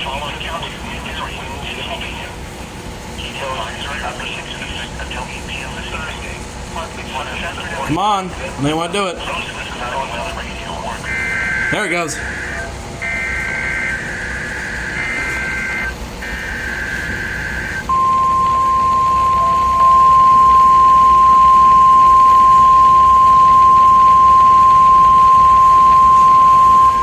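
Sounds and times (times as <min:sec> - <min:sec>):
steady warning alarm tone: 0:10.9 - 0:27.0
warbling digital header bursts: 0:11.1 - 0:27.0.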